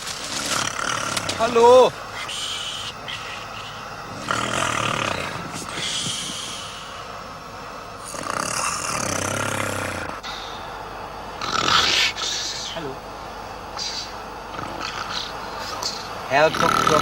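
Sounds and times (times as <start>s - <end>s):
man snoring: 0.3s - 7.0s, 8.0s - 10.7s, 11.4s - 12.6s, 14.5s - 17.0s.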